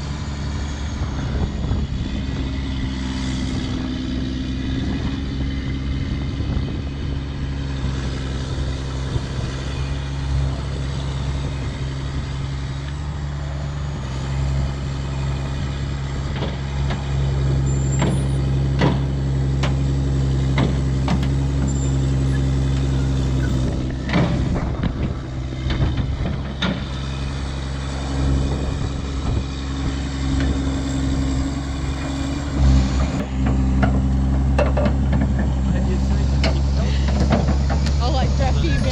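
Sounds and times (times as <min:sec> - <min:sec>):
large engine running: 0:00.0 - 0:38.9
sharp knocks and clanks: 0:18.0 - 0:19.9, 0:20.5 - 0:21.7, 0:24.0 - 0:27.0, 0:32.9 - 0:38.2.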